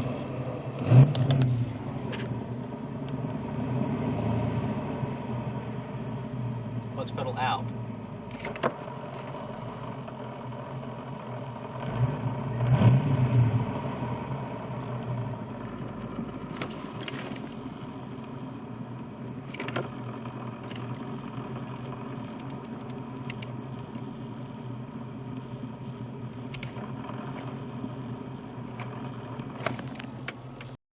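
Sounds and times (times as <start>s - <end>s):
car engine idling: 0.0s - 30.8s
transmission bearing noise: 13.7s - 30.8s.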